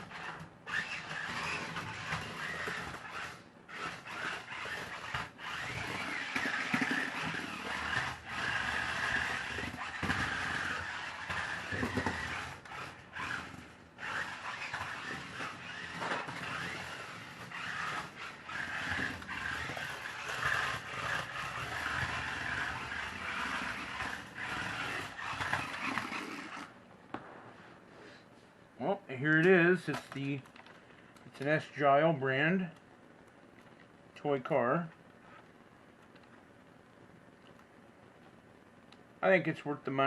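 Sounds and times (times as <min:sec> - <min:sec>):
toy car electric motor whining: 0:00.0 - 0:26.7
plastic toy car scraping and knocking: 0:00.0 - 0:27.2.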